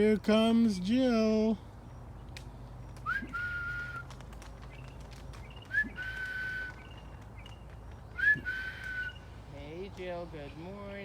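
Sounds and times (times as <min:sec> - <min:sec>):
person whistling a call: 0:03.0 - 0:04.1, 0:05.7 - 0:06.8, 0:08.2 - 0:09.2.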